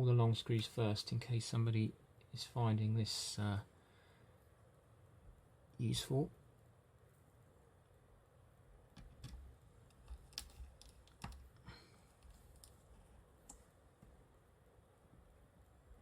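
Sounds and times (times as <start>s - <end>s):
small tools clicking and tapping: 9.0s - 12.8s.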